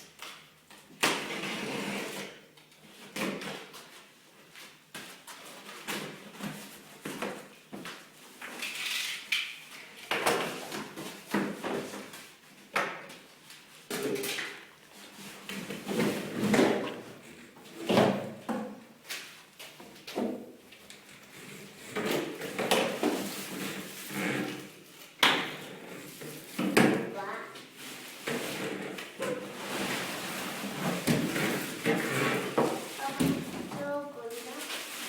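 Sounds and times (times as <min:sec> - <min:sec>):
cardboard scraping and rustling: 0:27.2 - 0:35.0.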